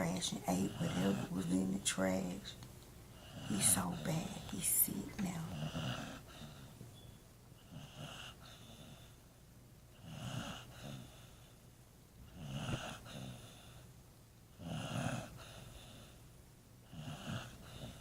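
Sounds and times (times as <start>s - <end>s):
dog snoring: 0.0s - 2.5s, 3.2s - 6.8s, 7.6s - 9.2s, 9.9s - 11.6s, 12.2s - 13.9s, 14.5s - 16.2s, 16.8s - 18.0s.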